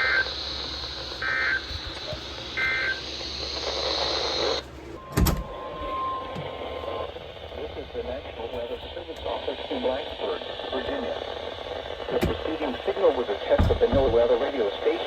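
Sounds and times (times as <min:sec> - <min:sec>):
receiver hiss: 0:00.0 - 0:15.0
steady tone: 0:05.0 - 0:15.0.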